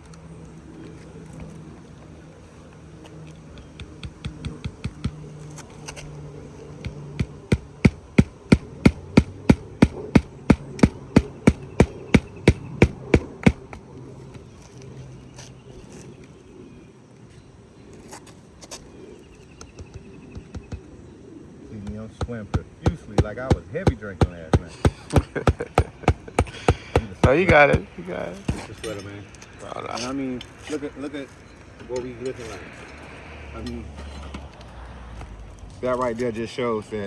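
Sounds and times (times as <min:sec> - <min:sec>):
hammer striking shingle roof: 0:03.6 - 0:05.3, 0:06.8 - 0:13.9, 0:21.8 - 0:28.8.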